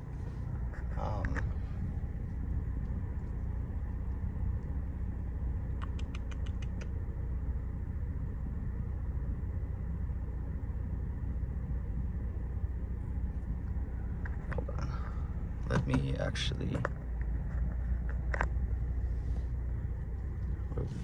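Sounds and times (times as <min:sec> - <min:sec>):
car cabin rumble: 0:00.0 - 0:05.9, 0:06.8 - 0:21.0.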